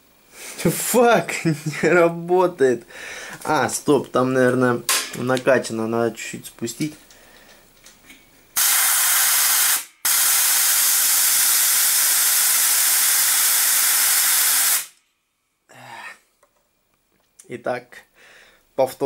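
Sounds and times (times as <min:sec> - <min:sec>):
compressed air hissing: 0:08.6 - 0:15.0.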